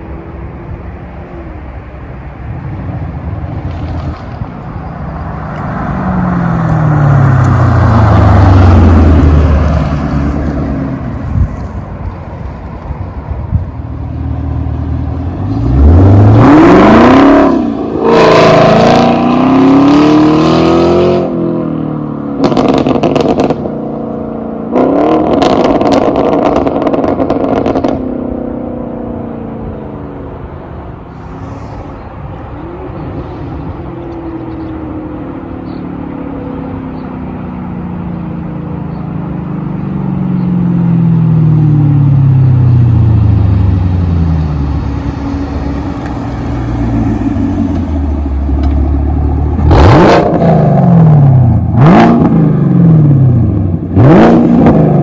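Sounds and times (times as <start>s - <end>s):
car driving past: 3.5s - 12.2s, 42.0s - 54.2s
car engine revving: 5.2s - 11.8s, 14.4s - 21.7s, 42.0s - 55.0s
exhaust cracks: 43.8s - 52.6s.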